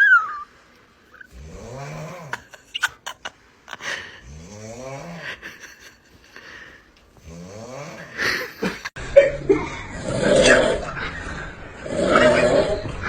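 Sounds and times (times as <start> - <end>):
person snoring: 1.3 - 2.6, 3.8 - 5.5, 7.2 - 8.7, 9.6 - 11.0, 11.8 - 13.0.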